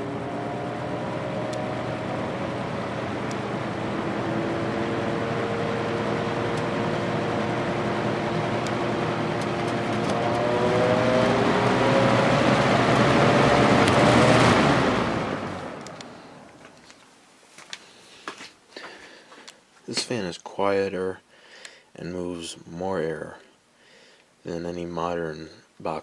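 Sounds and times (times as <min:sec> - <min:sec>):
rush of air from fan blades: 0:00.0 - 0:16.6
fan motor humming: 0:00.0 - 0:16.9.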